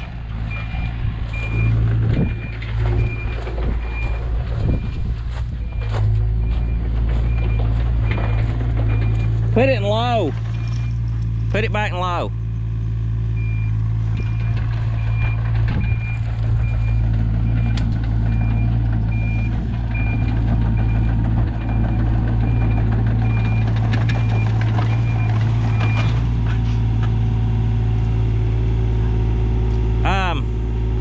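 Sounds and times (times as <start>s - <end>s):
backup alarm beeping: 0.5s - 5.0s.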